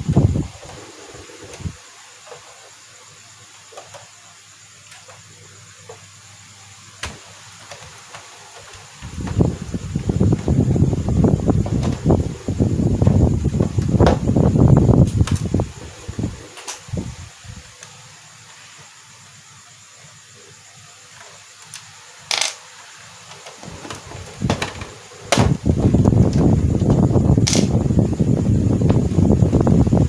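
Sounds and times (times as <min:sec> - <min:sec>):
handling noise rustling and knocking: 0:07.0 - 0:15.6, 0:21.8 - 0:30.0
sharp plastic clicks: 0:27.4 - 0:27.8.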